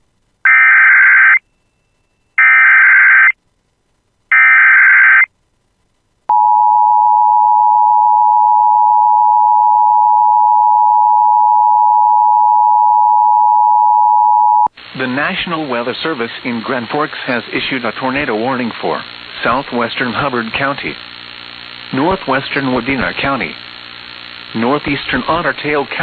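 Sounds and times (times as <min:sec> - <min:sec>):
long steady attention tone: 0:00.4 - 0:15.8
warbling data tone bursts: 0:00.5 - 0:03.4, 0:04.3 - 0:05.3.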